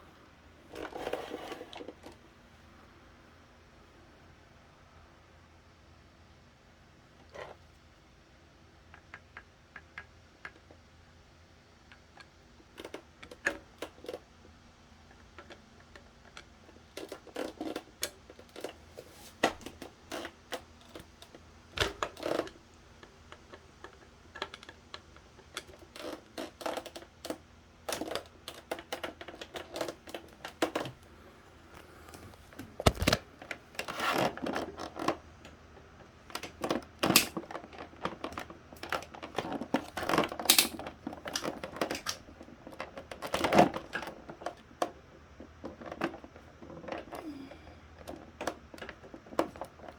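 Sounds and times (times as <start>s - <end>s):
clicks and scrapes of fan parts: 15.1s - 22.6s, 23.3s - 31.1s, 31.7s - 35.6s, 36.3s - 49.9s.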